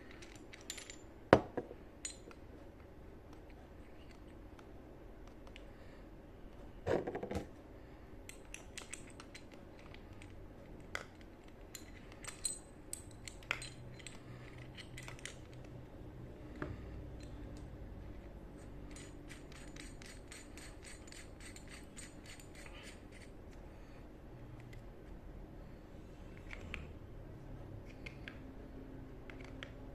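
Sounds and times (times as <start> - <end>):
small metal parts clinking: 0.0 - 1.1, 2.0 - 2.4, 8.3 - 15.7, 17.2 - 23.3.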